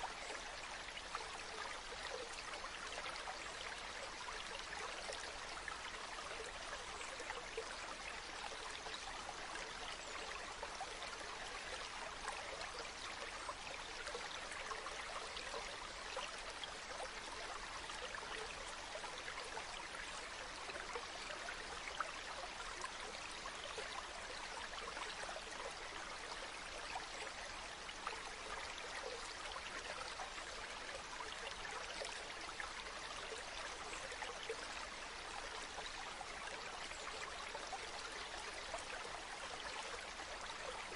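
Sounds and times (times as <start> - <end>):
stream running over rocks: 0.0 - 40.9.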